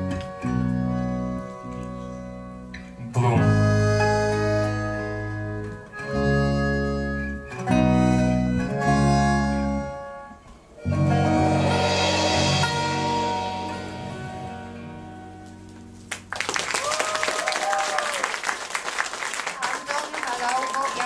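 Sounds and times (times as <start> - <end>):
live band playing chords: 0.0 - 16.6
cymbal crash: 10.9 - 15.4.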